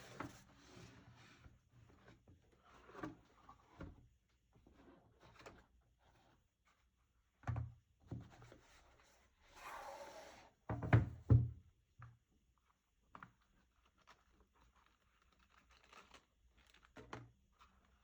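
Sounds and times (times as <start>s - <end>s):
cardboard sliding and rustling: 9.5s - 10.5s.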